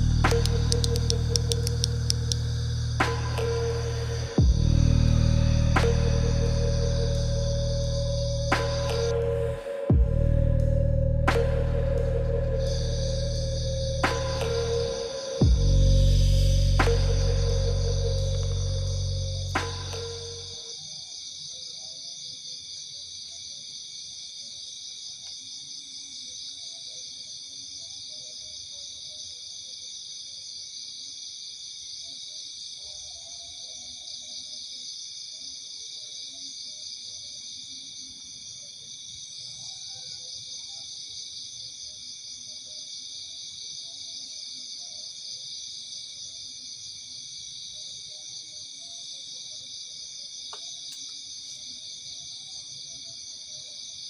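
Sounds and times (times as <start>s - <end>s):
insects trilling: 0.0s - 9.9s, 11.4s - 21.9s, 32.8s - 54.0s
faint low calls: 0.0s - 20.6s.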